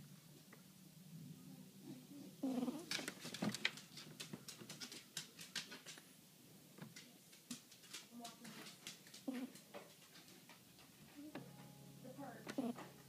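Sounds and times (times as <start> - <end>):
kitten snoring: 1.8 - 3.0, 12.5 - 12.9.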